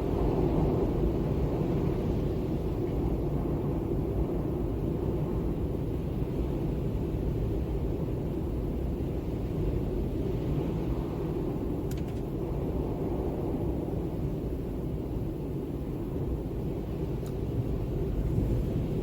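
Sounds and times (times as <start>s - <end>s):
low rumbling wind: 0.0s - 19.0s
faint tick: 17.2s - 17.4s.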